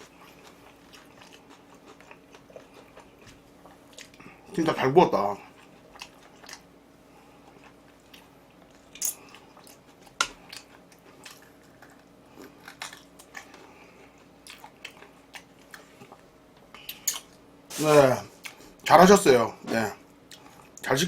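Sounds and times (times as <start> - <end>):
person chewing and biting food: 0.0 - 4.4, 5.5 - 6.7, 7.3 - 17.4
faint steady hum: 0.0 - 21.0
food crunches: 7.6 - 17.4.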